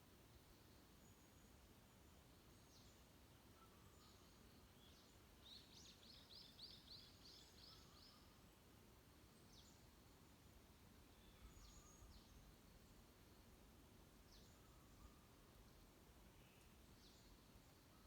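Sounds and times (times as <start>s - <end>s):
songbird singing: 0.5s - 8.4s, 9.4s - 13.6s, 14.2s - 18.0s.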